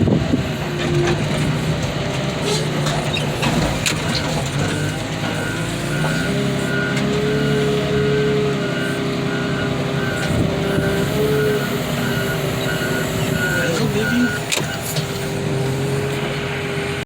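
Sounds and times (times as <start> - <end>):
heavy diesel machinery running: 0.0 - 17.0
reversing alarm beeping: 4.7 - 15.0.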